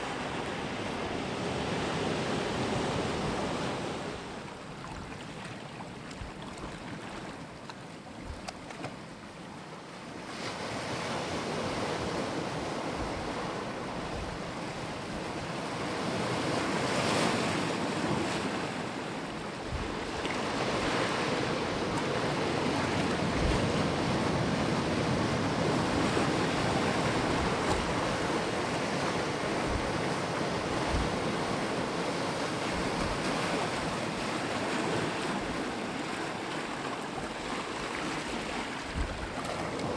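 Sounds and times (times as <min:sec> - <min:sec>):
sea waves breaking on shore: 0:00.0 - 0:39.9
wind buffeting microphone: 0:19.6 - 0:34.2, 0:38.3 - 0:39.9.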